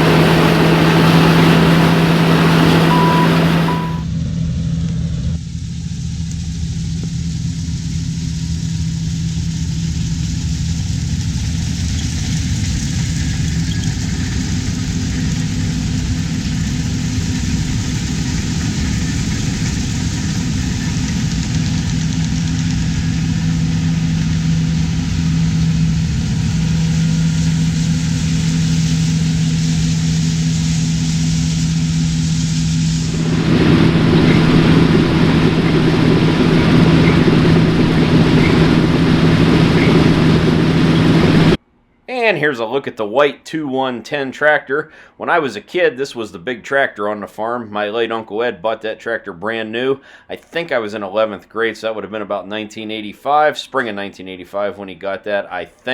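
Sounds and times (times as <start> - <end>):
diesel engine humming: 0.0 - 4.1, 23.4 - 41.6.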